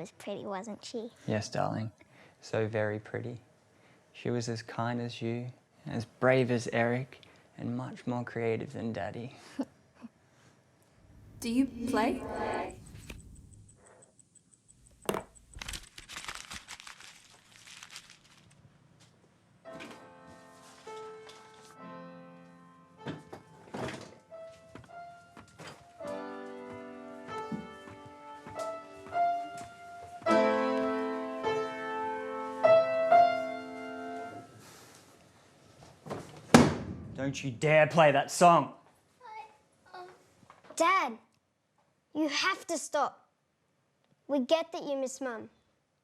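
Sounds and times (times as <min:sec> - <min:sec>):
slow piano phrase: 0:19.7 - 0:34.5.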